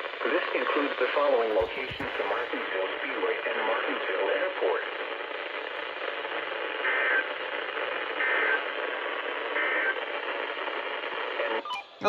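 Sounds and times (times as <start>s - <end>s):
radio static: 0.0s - 12.0s
two-tone digital chirps: 11.6s - 12.0s.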